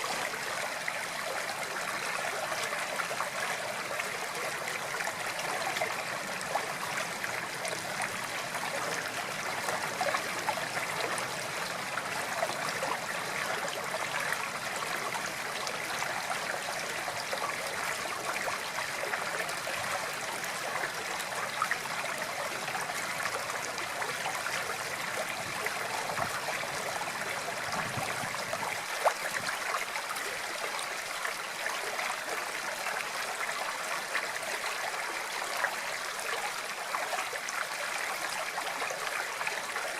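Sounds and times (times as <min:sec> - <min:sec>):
flowing water: 0:00.0 - 0:39.9.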